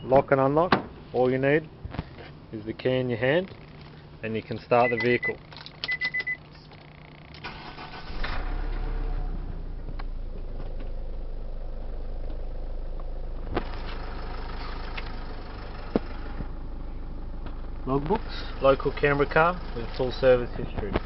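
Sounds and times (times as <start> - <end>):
car engine starting and idling: 0.4 - 21.0.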